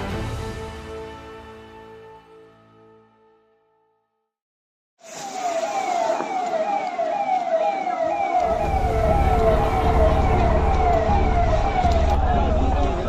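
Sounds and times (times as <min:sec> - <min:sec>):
vehicle siren sweeping: 0:05.0 - 0:13.0.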